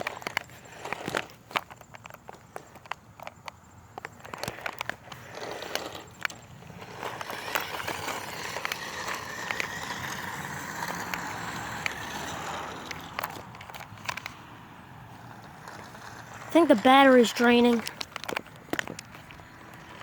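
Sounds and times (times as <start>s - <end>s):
wheels rolling over rough ground: 0.0s - 20.0s
scattered clicks and knocks: 7.0s - 14.4s, 17.6s - 20.0s.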